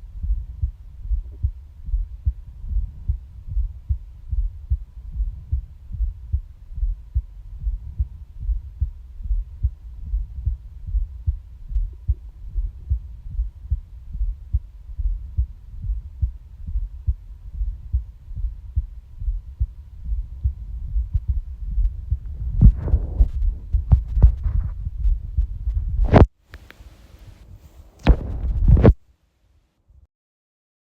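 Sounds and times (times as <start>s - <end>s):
heartbeat thumps: 0.0s - 26.3s, 28.0s - 29.0s.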